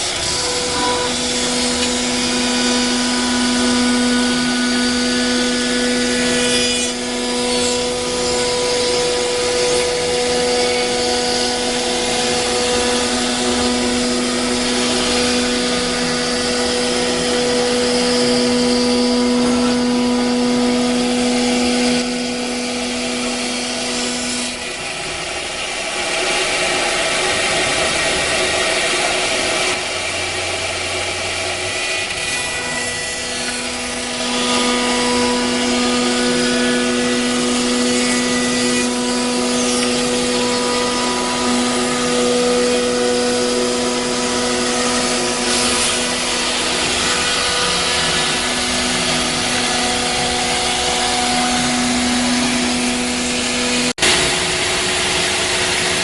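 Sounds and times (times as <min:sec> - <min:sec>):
router cutting noise: 0:00.0 - 0:56.0
spindle whine: 0:00.0 - 0:56.0.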